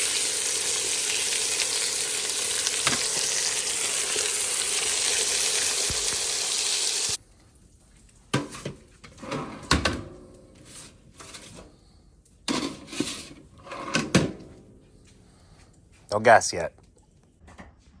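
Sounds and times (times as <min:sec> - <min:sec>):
loud steady hiss: 0:00.0 - 0:07.2.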